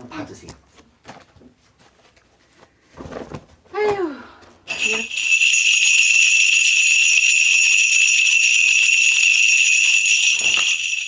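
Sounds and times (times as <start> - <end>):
bells jingling: 4.7 - 11.0.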